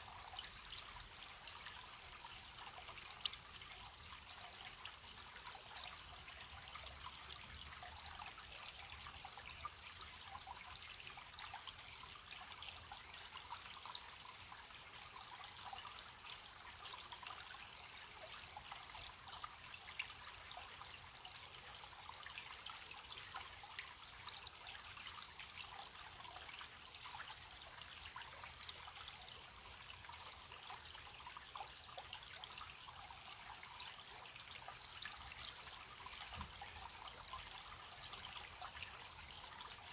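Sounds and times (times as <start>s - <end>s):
crickets chirping: 0.0s - 31.4s
stream babbling: 0.0s - 39.9s.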